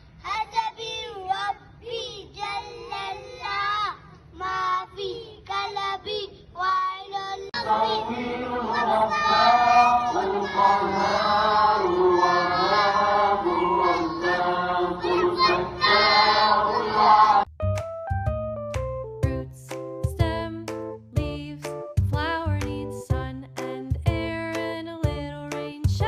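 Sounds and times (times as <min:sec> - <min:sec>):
children singing in chorus: 0:07.5 - 0:17.4.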